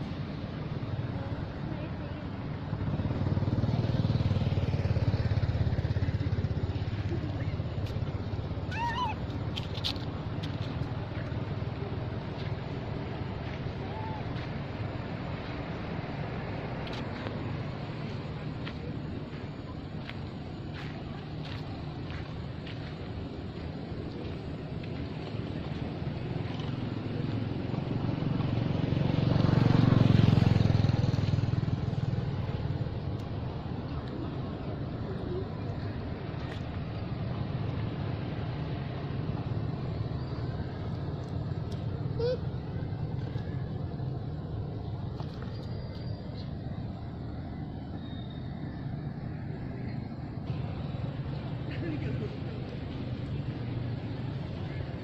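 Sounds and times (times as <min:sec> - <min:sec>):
motor vehicle passing: 0:00.0 - 0:55.0
high squealing animal call: 0:08.7 - 0:09.2.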